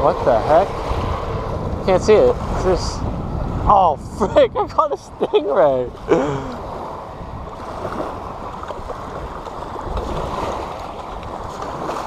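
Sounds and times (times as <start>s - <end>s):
wind rushing: 0.0s - 5.2s
small waves lapping: 0.0s - 12.0s.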